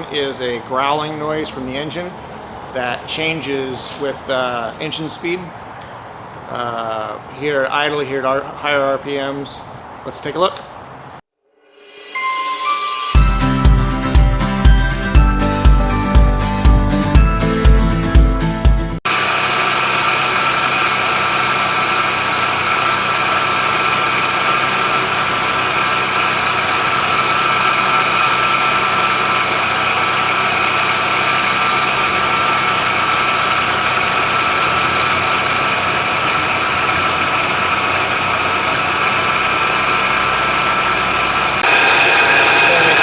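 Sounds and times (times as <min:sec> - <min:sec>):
car engine idling: 0:19.1 - 0:43.0.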